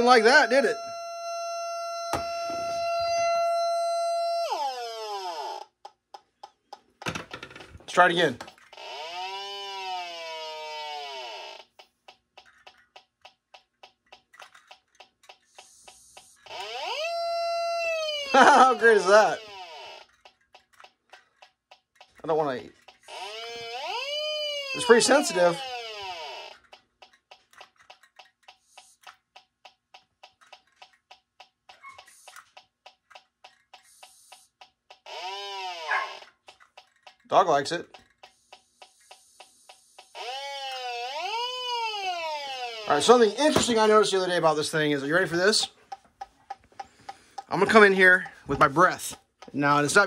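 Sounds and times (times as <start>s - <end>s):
gas detector ticking: 0.0s - 4.5s, 11.6s - 37.3s, 38.0s - 44.6s, 45.2s - 50.0s
steady electronic alarm: 0.0s - 5.7s, 8.7s - 11.8s, 15.5s - 20.1s, 23.0s - 26.6s, 35.0s - 36.3s, 38.8s - 43.4s
falling electronic tone: 16.5s - 20.0s.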